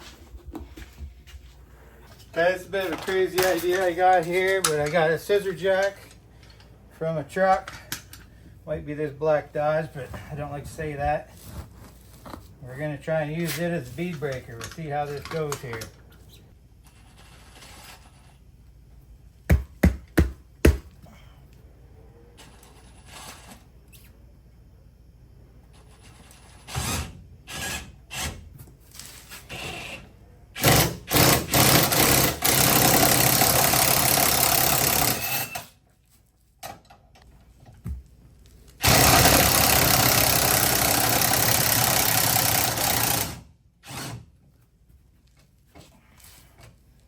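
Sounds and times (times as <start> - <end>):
power tool running: 38.8 - 44.0.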